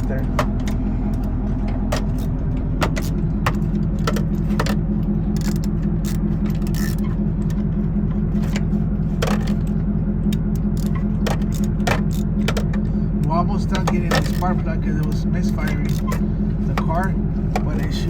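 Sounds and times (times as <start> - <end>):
low engine hum: 0.0 - 18.0.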